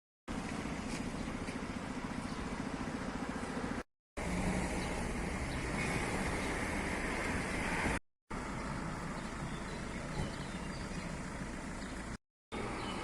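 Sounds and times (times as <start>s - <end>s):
car engine idling: 0.3s - 3.8s, 8.3s - 12.9s
second car engine running: 0.3s - 13.0s.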